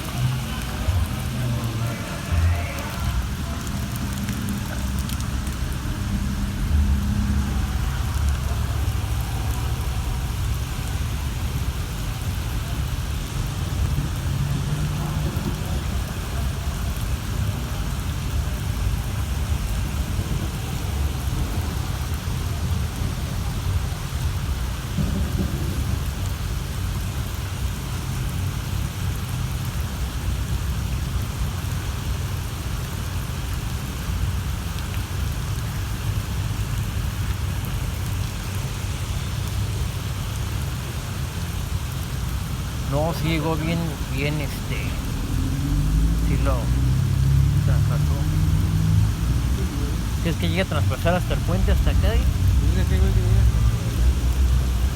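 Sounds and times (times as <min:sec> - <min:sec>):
low thunder rumble: 0:00.0 - 0:28.5
heavy rain pouring: 0:00.0 - 0:54.9.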